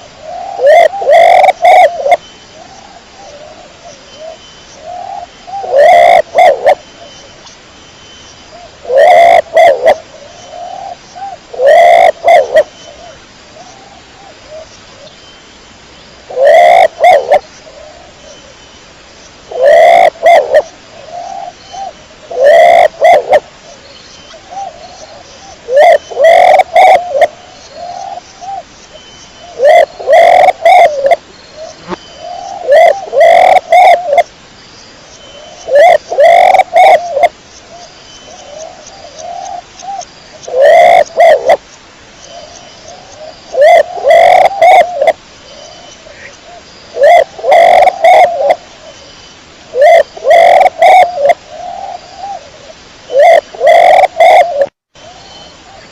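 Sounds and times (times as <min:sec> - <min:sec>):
pigeon cooing: 0:00.2 - 0:02.2, 0:05.0 - 0:06.8, 0:08.8 - 0:10.0, 0:10.6 - 0:12.7, 0:16.3 - 0:18.0, 0:19.5 - 0:21.5, 0:22.3 - 0:23.4, 0:25.7 - 0:27.4, 0:29.6 - 0:31.2, 0:31.8 - 0:34.3, 0:35.7 - 0:37.3, 0:40.4 - 0:41.6, 0:43.5 - 0:45.2, 0:47.0 - 0:49.0, 0:49.8 - 0:52.4, 0:53.1 - 0:54.7.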